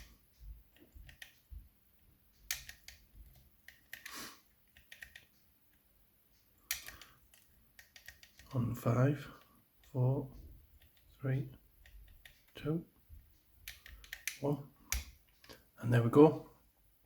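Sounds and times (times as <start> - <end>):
lock pick clicking: 6.7 - 8.5, 13.6 - 15.6.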